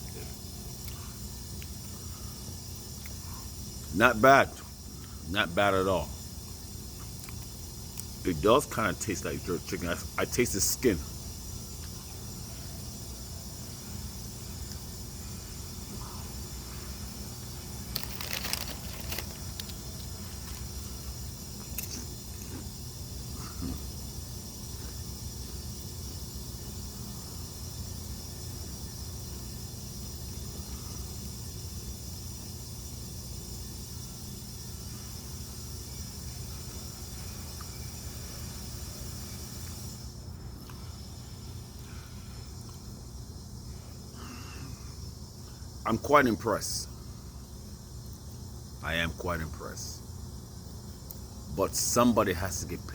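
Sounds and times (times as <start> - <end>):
constant hiss: 0.0 - 52.9
potato chip bag crackling: 17.7 - 20.9.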